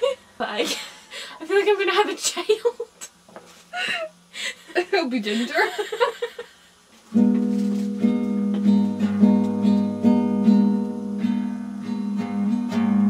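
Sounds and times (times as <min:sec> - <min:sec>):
acoustic guitar strummed chords: 0:07.1 - 0:13.0.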